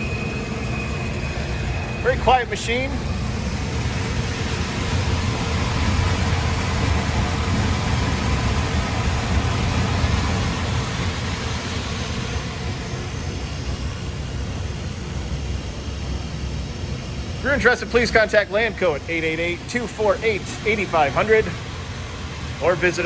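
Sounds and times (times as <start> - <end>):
dryer machine hum: 0.0 - 23.0.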